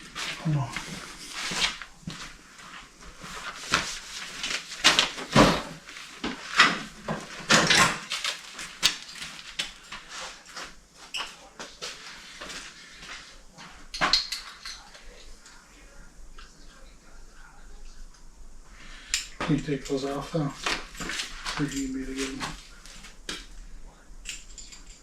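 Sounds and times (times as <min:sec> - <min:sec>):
metal hardware clicking and rattling: 0:24.2 - 0:25.0.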